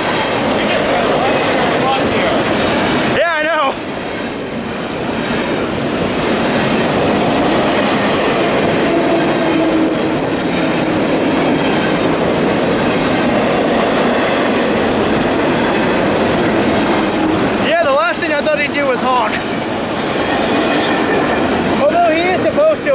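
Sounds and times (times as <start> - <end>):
clickety-clack over track joints: 0.0 - 22.9
train wheels rumbling on rail: 0.0 - 22.9.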